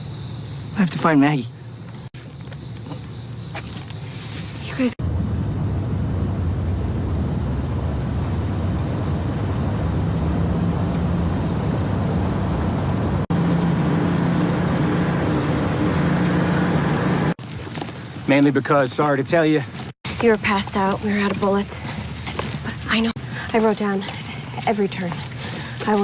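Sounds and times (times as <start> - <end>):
road noise: 0.0 - 26.0
vehicle engine drone: 1.6 - 18.2.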